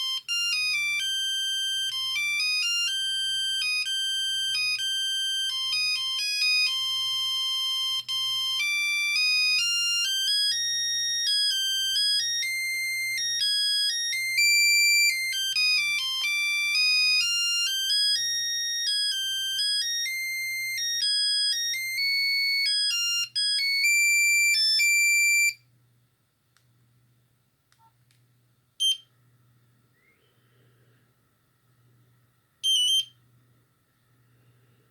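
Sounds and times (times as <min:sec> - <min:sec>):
monophonic ringtone melody: 0:00.0 - 0:25.6.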